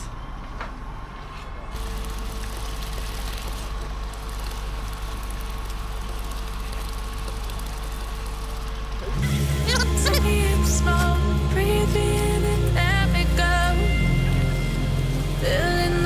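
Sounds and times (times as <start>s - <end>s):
faint steady whine: 1.8s - 16.0s
truck engine running: 1.8s - 16.0s
music with heavy bass: 9.2s - 16.0s.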